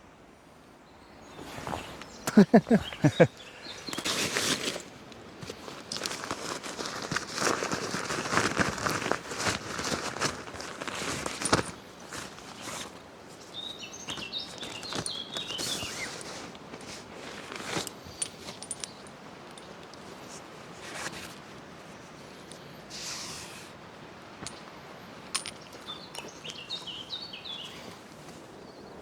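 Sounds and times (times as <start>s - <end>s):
songbird chirping: 0.7s - 4.2s, 13.4s - 16.2s, 24.4s - 29.0s
footsteps on woodland ground: 1.4s - 12.8s
gear crinkling: 2.3s - 12.9s, 14.1s - 20.0s.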